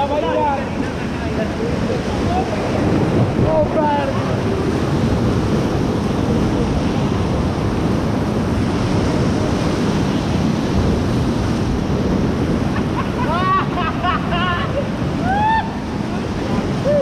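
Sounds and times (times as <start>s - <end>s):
river rapids rushing: 0.0s - 17.0s
wind buffeting microphone: 0.0s - 17.0s.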